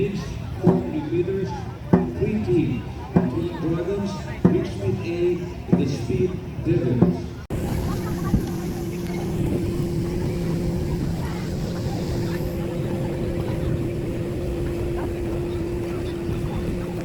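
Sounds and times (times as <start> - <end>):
low hum: 7.5 - 17.0
motorboat engine running: 7.5 - 17.0.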